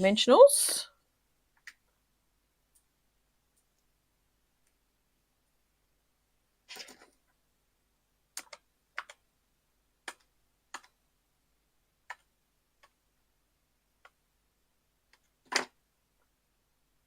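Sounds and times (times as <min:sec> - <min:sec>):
paper-craft pieces clicking and tapping: 0:08.3 - 0:09.3, 0:10.0 - 0:11.0, 0:12.0 - 0:13.0.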